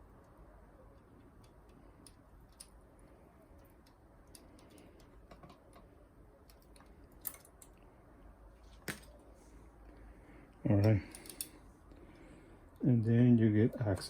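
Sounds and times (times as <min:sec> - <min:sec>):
mechanism clicks and taps: 0:01.0 - 0:02.8.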